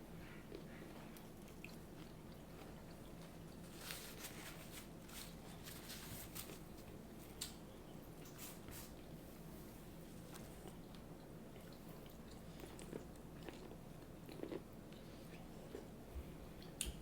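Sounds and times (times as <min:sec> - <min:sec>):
faint steady hum: 0:00.0 - 0:17.0
chewing with wet mouth smacks: 0:00.1 - 0:03.7, 0:10.3 - 0:17.0.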